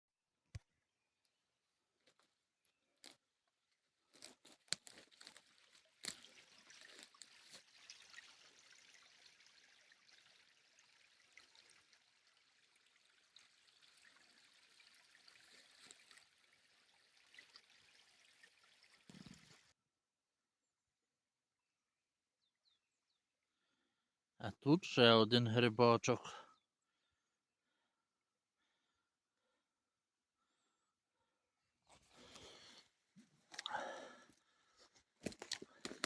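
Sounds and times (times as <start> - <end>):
faint trickling mountain stream: 1.9 - 19.8, 24.4 - 27.0, 31.9 - 36.0.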